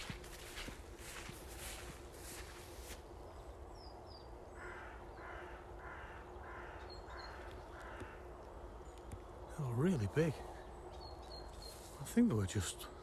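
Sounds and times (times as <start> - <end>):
rustling footsteps: 0.0 - 3.1
small birds chirping: 0.0 - 13.0
crow cawing: 4.5 - 8.4.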